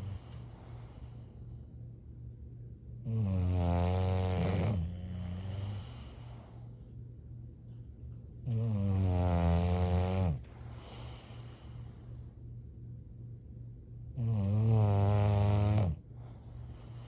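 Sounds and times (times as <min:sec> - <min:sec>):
dog snoring deeply: 0:00.0 - 0:00.5, 0:03.0 - 0:06.4, 0:08.4 - 0:11.5, 0:14.1 - 0:16.0
dog breathing softly: 0:00.0 - 0:01.8, 0:04.4 - 0:08.0, 0:10.2 - 0:12.5, 0:16.1 - 0:17.0.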